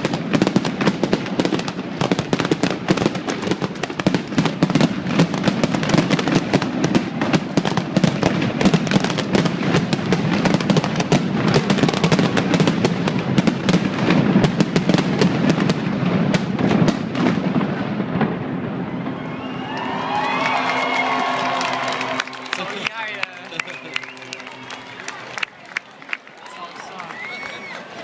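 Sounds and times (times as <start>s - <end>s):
fireworks booming and crackling: 0.0s - 19.4s.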